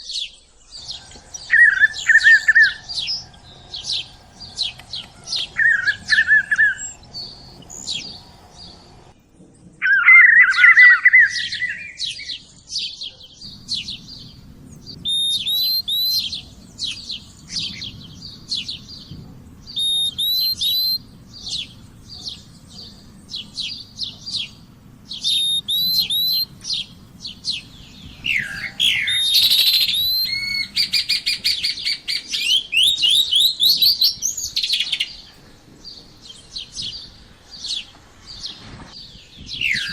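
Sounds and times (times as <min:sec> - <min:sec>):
songbirds chirping: 0:00.0 - 0:39.9
bird fast trill: 0:00.9 - 0:09.1, 0:13.4 - 0:35.3
bird warbling: 0:01.0 - 0:09.1, 0:13.5 - 0:35.3.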